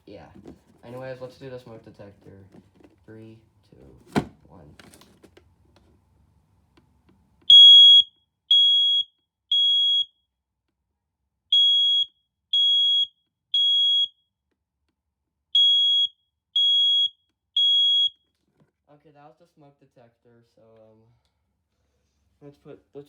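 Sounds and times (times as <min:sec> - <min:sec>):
smoke detector beeping: 0:07.5 - 0:10.1, 0:11.5 - 0:14.1, 0:15.6 - 0:18.1.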